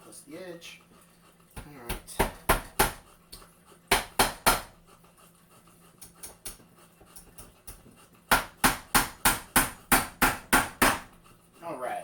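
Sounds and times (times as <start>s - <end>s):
hammer striking nail into wood: 1.9s - 3.0s, 3.9s - 4.7s, 8.3s - 11.2s.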